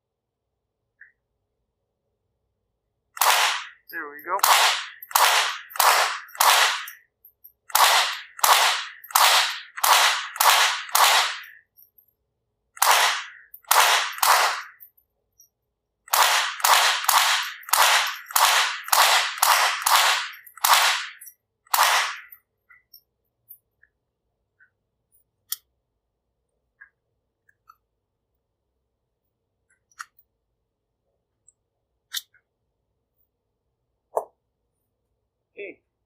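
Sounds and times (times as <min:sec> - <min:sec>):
rifle shots: 0:03.2 - 0:07.0, 0:07.7 - 0:11.6, 0:12.8 - 0:14.8, 0:16.1 - 0:22.3.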